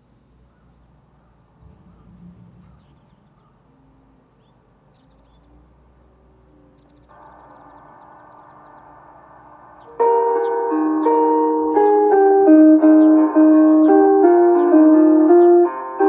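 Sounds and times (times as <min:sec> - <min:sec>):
high bird chirps: 0:00.6 - 0:03.7, 0:04.4 - 0:05.5, 0:06.8 - 0:16.0
low rumble: 0:01.6 - 0:04.0.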